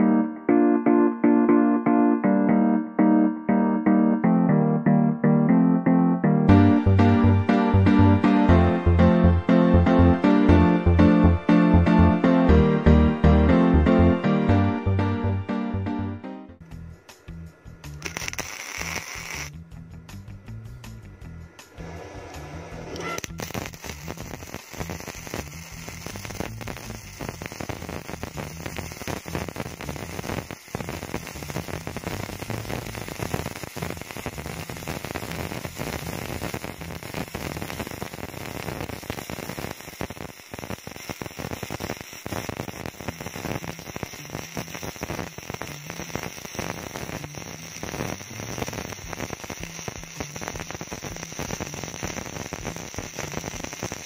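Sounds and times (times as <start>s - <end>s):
low electrical hum: 16.6s - 37.2s
welding arc crackling: 16.7s - 21.0s, 21.7s - 54.0s.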